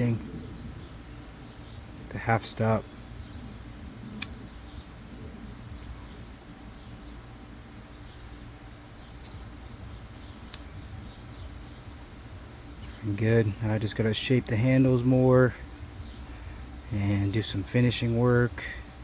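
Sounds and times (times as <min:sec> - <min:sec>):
steady low hum: 0:00.0 - 0:19.0
folding knife blade clicking: 0:04.1 - 0:04.4, 0:10.5 - 0:10.7.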